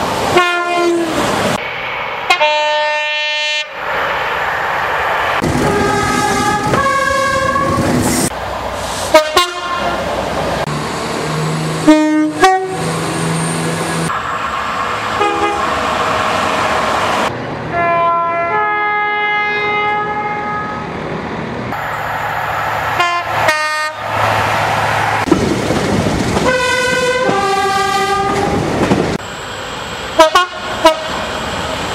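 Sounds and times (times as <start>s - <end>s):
passing trains: 0.0s - 31.9s
two-tone train air horns: 0.4s - 1.2s, 2.3s - 3.8s, 5.6s - 7.8s, 9.1s - 10.0s, 11.8s - 12.9s, 15.2s - 15.8s, 17.7s - 20.8s, 23.0s - 24.0s, 26.4s - 28.6s, 30.2s - 31.2s.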